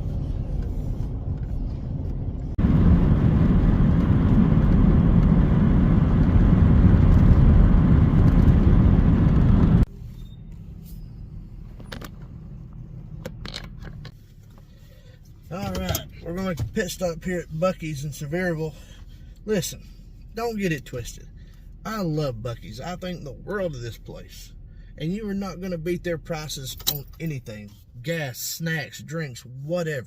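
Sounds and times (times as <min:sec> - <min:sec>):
car road noise: 0:00.0 - 0:30.0.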